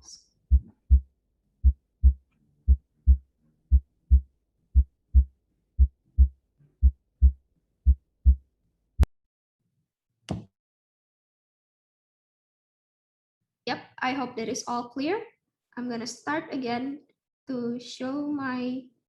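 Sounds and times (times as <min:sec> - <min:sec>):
heartbeat thumps: 0:00.5 - 0:08.4.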